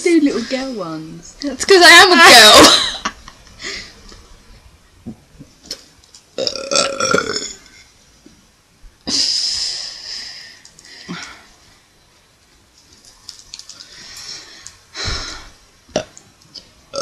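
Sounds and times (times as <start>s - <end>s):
breathy airy belch: 6.4s - 7.7s
person burping: 6.4s - 7.7s.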